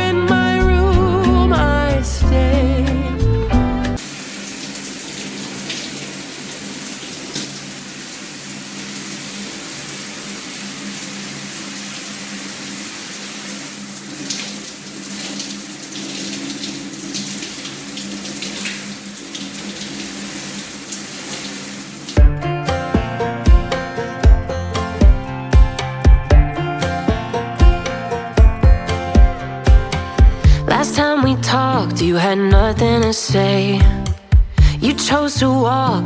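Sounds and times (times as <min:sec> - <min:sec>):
water running from faucet: 0:04.0 - 0:22.2.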